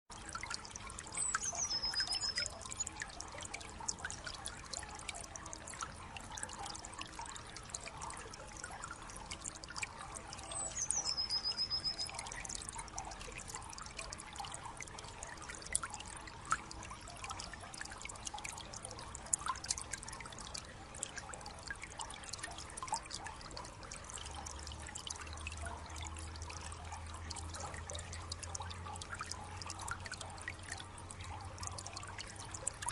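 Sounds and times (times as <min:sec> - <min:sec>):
water drips and splashes: 0:00.1 - 0:32.9
water trickling: 0:00.1 - 0:32.9.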